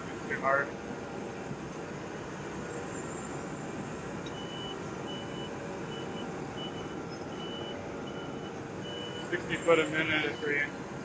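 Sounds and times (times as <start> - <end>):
reversing alarm beeps: 4.2 - 10.7.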